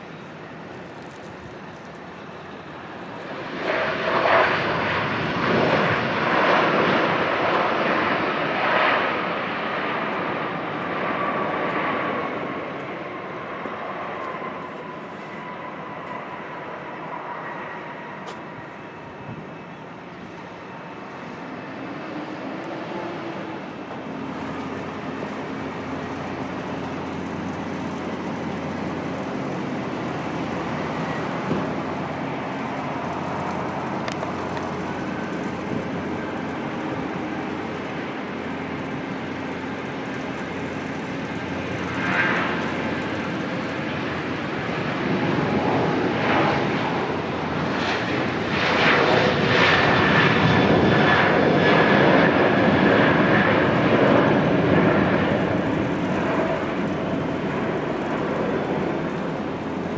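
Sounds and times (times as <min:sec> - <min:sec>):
distant airliner engines droning: 0:00.0 - 0:59.9.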